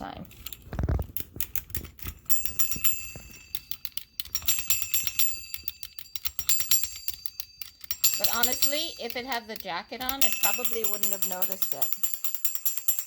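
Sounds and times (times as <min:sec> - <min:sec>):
clockwork spring winding clicks: 0:00.0 - 0:13.0
wind-up toy clicking and clinking: 0:00.3 - 0:13.0
bell-like metallic ringing: 0:02.3 - 0:13.0.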